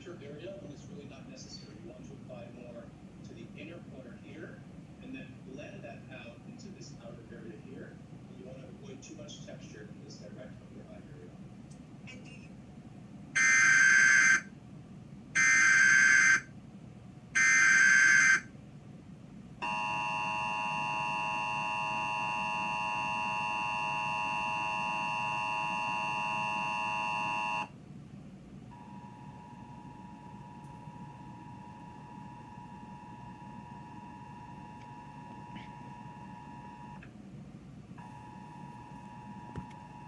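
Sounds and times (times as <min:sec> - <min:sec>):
faint steady tone: 0:19.6 - 0:27.7, 0:28.7 - 0:37.1, 0:38.0 - 0:40.0
two-tone attention signal: 0:19.6 - 0:27.7.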